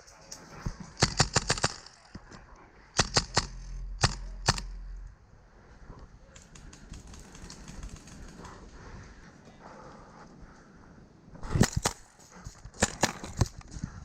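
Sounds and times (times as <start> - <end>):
airsoft gun shots: 1.0 - 1.9, 3.0 - 4.9
low rumble: 2.4 - 6.2.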